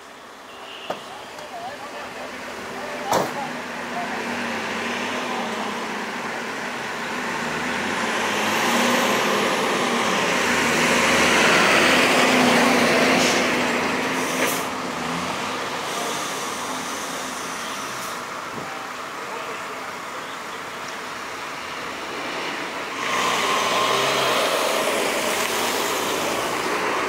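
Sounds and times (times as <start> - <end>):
heavy truck driving past: 4.2 - 18.4.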